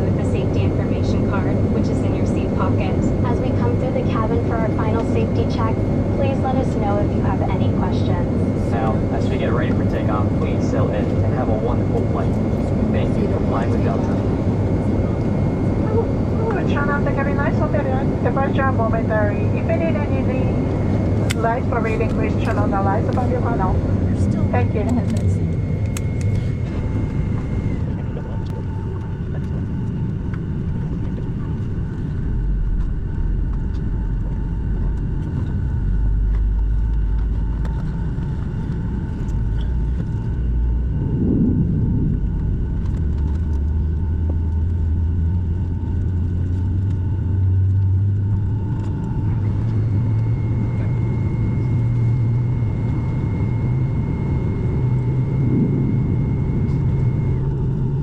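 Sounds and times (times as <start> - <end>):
aircraft cabin rumble: 0.0 - 58.0
faint steady whines: 0.0 - 58.0
jet engine spooling up: 0.0 - 58.0.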